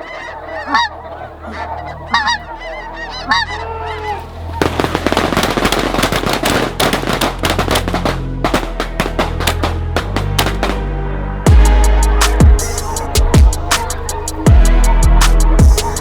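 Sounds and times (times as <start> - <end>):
geese honking: 0.0 - 16.0
music with drum beat: 4.7 - 10.8, 11.5 - 16.0.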